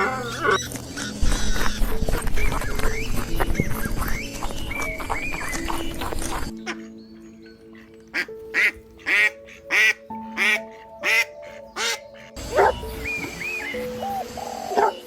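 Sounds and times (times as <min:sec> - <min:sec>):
soft background music: 0:00.0 - 0:15.0
duck quacking: 0:08.2 - 0:12.7.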